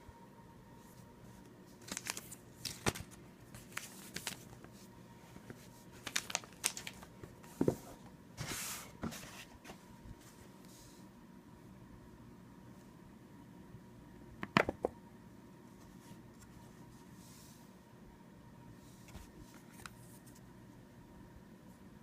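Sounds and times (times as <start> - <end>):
packaging rustle: 1.8 - 4.7, 5.4 - 7.1.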